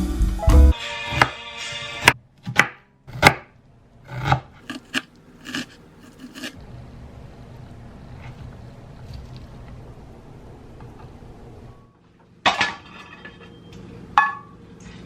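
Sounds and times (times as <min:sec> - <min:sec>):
knife chopping on cutting board: 0:02.0 - 0:03.5, 0:04.1 - 0:06.6.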